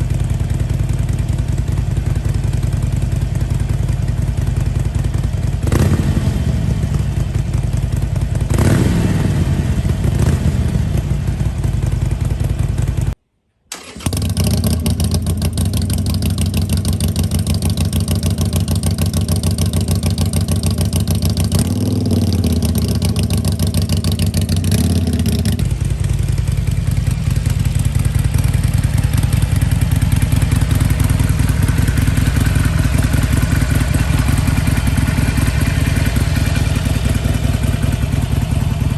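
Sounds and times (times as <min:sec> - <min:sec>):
motorcycle engine revving and idling: 0:00.0 - 0:13.2, 0:13.8 - 0:38.9.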